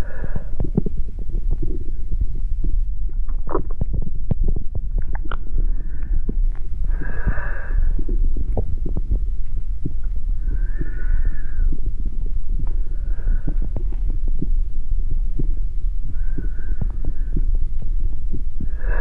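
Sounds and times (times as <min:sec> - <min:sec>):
crackles and clicks: 0:00.0 - 0:19.0
deep rumble: 0:00.0 - 0:19.0.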